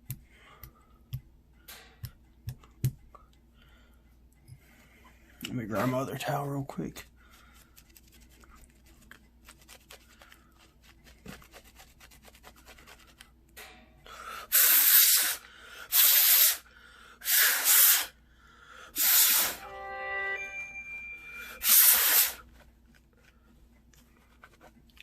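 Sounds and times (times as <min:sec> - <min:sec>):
faint rustling and handling: 0:04.6 - 0:13.4, 0:22.4 - 0:25.0.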